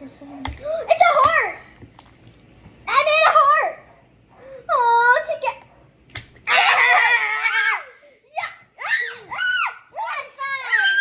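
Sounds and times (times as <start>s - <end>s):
girl screaming: 6.5s - 11.0s.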